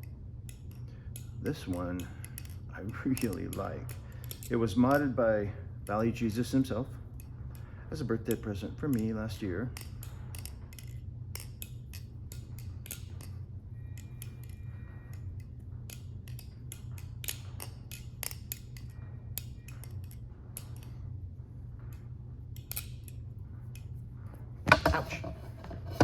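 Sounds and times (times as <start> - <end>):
steady low hum: 0.0 - 26.0
butterfly knife metal clicks: 0.5 - 5.2, 9.7 - 21.0, 21.9 - 23.9.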